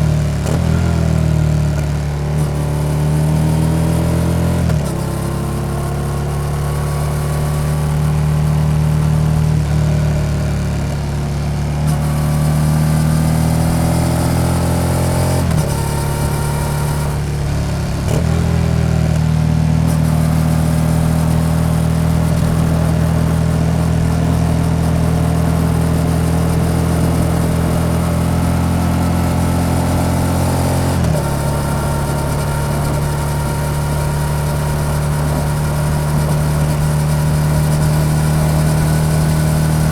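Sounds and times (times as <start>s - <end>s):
motorcycle engine accelerating: 0.0s - 39.9s
motorcycle gear shifts: 0.2s - 6.8s.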